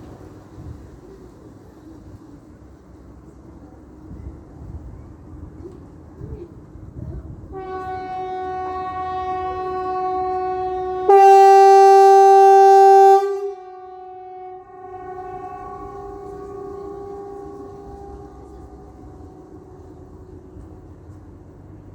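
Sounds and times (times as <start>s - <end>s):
low pneumatic warning horn blast: 7.5s - 20.0s.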